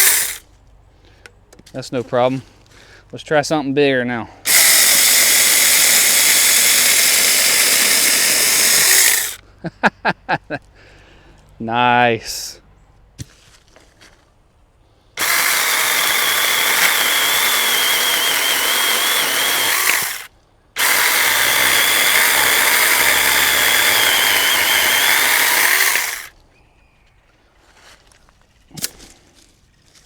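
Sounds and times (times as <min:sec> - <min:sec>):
electric chainsaw cutting wood: 0:00.0 - 0:00.4, 0:04.5 - 0:09.4, 0:15.2 - 0:26.3.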